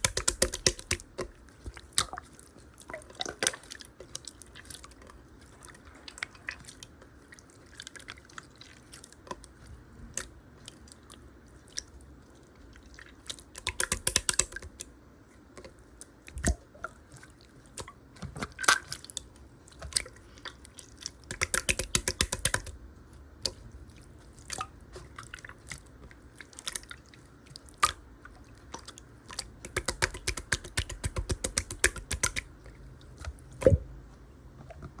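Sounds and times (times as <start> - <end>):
slime rapid crackling: 0.0 - 1.2, 21.3 - 22.8, 29.6 - 32.5
wet slime clicks and pops: 0.0 - 1.3, 13.6 - 14.8, 21.3 - 22.8, 29.7 - 32.5.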